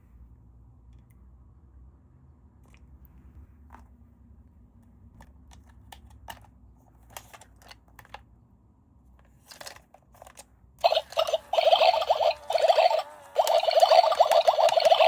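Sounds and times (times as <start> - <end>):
plastic toy parts clicking: 9.4 - 15.0
warbling electronic toy sound: 10.8 - 15.0.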